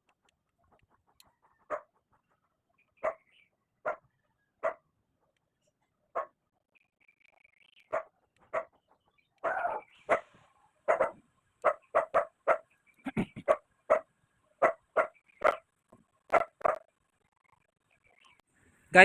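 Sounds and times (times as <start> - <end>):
dog barking: 1.7 - 2.0, 3.0 - 4.8, 6.1 - 6.4, 7.9 - 8.7, 9.4 - 12.7, 13.4 - 15.6, 16.3 - 16.9.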